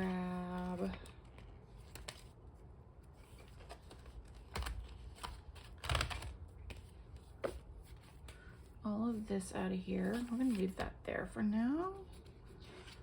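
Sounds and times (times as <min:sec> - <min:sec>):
sharp clicks of planner discs: 0:04.4 - 0:06.8
paper rustling: 0:10.0 - 0:11.0, 0:12.1 - 0:13.0.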